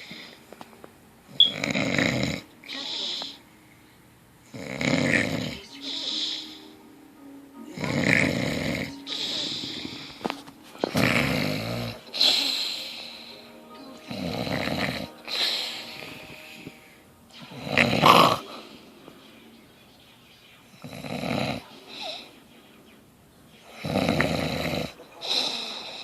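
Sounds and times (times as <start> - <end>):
person snoring: 1.5 - 3.2, 4.5 - 6.5, 7.7 - 13.4, 14.1 - 18.8, 23.8 - 26.0.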